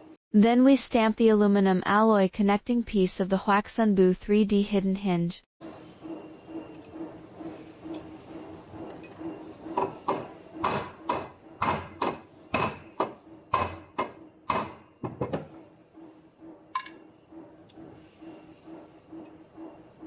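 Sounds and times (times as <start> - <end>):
steady low hum: 5.6 - 20.0
sharp metal impacts: 9.8 - 15.6.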